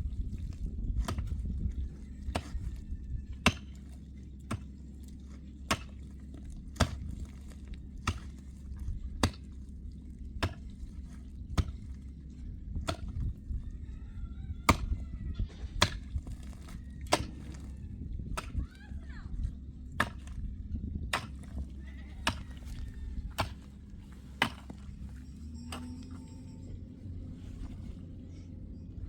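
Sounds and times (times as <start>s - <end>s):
steady low rumble: 0.0s - 29.0s
chopping knocks: 24.4s - 24.8s.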